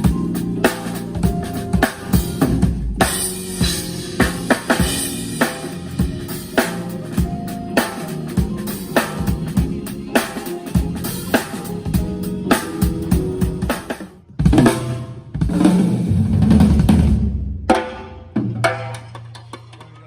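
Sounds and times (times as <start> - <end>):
drum kit playing: 0.0 - 19.8.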